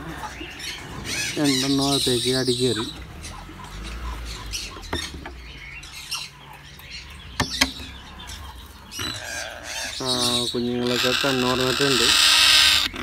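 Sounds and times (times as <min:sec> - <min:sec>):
parrots chirping and squawking: 0:00.0 - 0:13.0
knocks and scratching: 0:02.7 - 0:05.6, 0:07.3 - 0:09.2.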